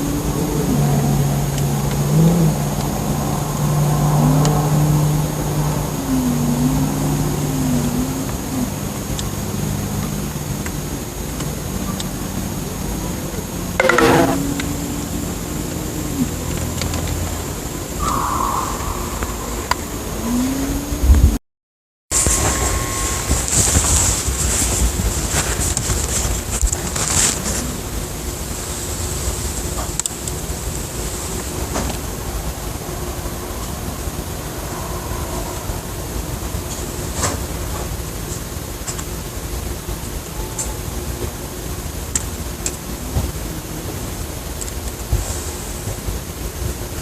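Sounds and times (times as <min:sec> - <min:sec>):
low engine-like drone: 0:00.0 - 0:21.4, 0:22.2 - 0:47.0
short rising tone: 0:13.8 - 0:14.9.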